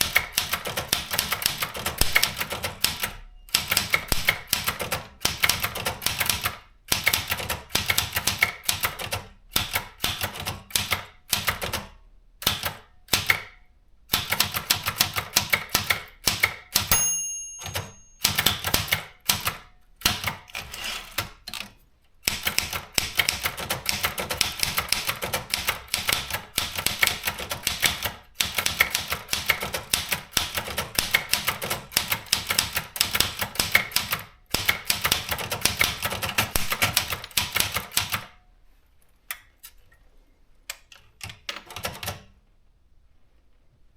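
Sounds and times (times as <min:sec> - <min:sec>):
typewriter key clacks: 0:00.0 - 0:06.5, 0:28.6 - 0:38.2
typewriter bell chime: 0:16.9 - 0:18.9.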